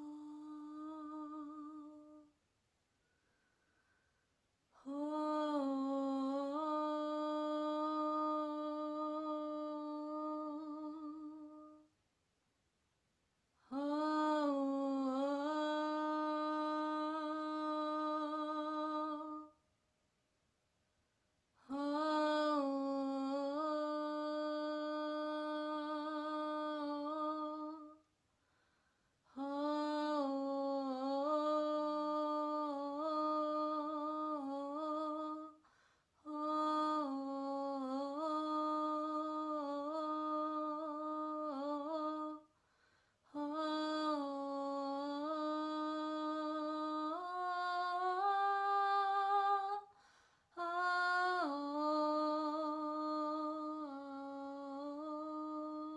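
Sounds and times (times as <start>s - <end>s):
person humming: 0.0s - 2.3s, 4.8s - 11.9s.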